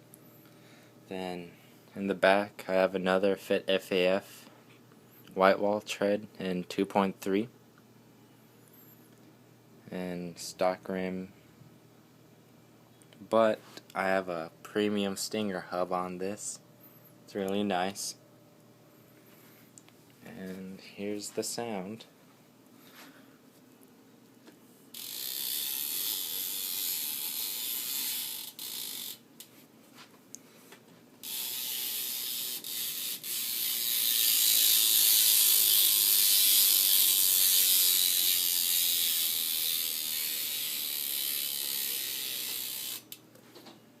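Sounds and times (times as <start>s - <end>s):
bike hub ratchet clicking: 24.9s - 29.2s, 31.2s - 43.2s.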